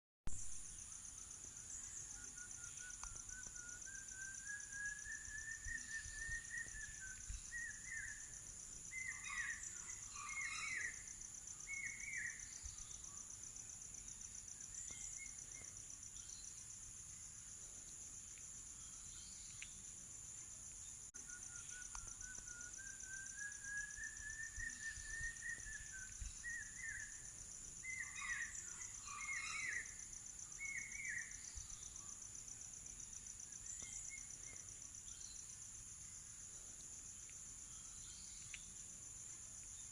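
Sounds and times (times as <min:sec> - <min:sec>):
insects trilling: 0:00.5 - 0:39.9
bird singing and chirping: 0:01.8 - 0:13.1, 0:21.2 - 0:32.0.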